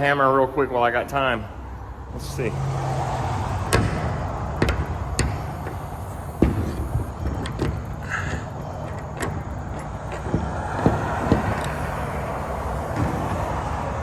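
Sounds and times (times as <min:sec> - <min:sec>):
vehicle engine idling: 0:01.6 - 0:14.0
hammer striking steel hinge: 0:03.6 - 0:13.5.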